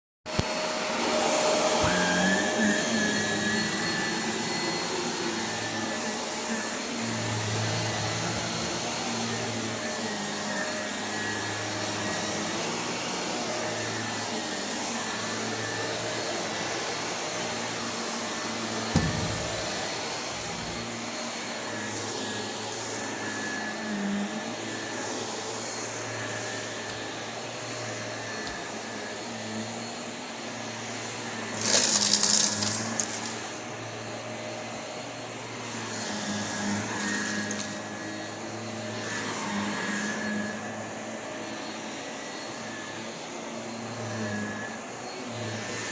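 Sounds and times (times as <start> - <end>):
vacuum cleaner running: 0.3 - 45.9
sharp knock: 19.0 - 19.6.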